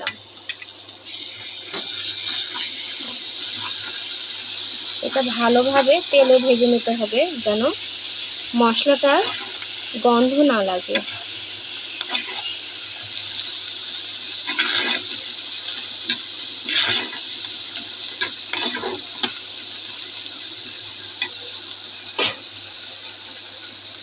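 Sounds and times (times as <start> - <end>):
spice paste sizzling in oil: 0.0 - 24.0
spatula scraping pan: 9.1 - 9.7, 12.0 - 13.2, 14.4 - 15.3, 16.0 - 17.4, 18.2 - 19.4.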